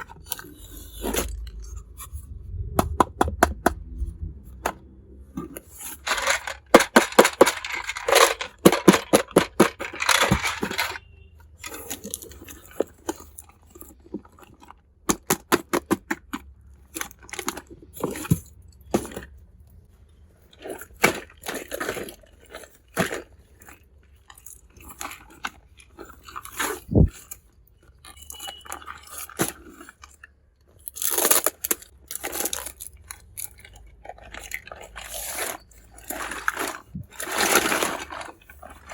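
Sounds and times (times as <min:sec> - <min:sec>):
plastic packaging crinkling: 0:05.8 - 0:11.1, 0:30.9 - 0:38.9
toy pieces clicking and tapping: 0:06.0 - 0:11.0.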